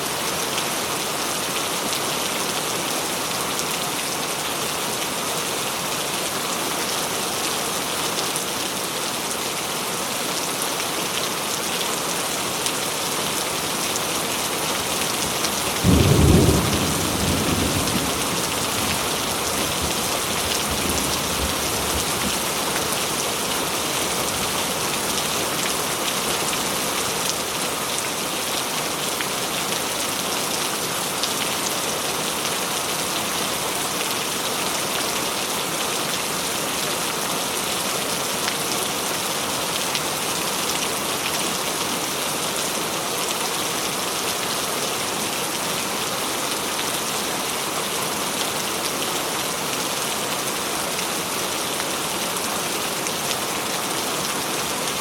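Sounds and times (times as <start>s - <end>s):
heavy rainfall: 0.0s - 55.0s
thunder clap rumbling: 15.8s - 20.0s.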